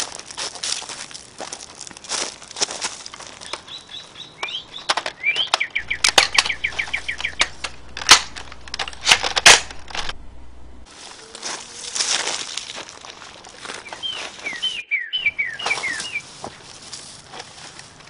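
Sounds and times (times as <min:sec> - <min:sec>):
bird chirping: 0:03.3 - 0:09.1, 0:13.8 - 0:16.3.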